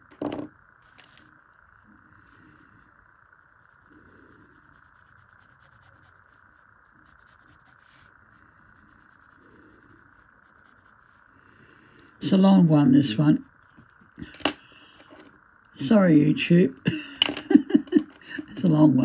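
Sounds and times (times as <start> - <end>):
steady low hiss: 0.0 - 19.0
drawing tool scratching paper: 3.5 - 8.1, 8.7 - 11.2.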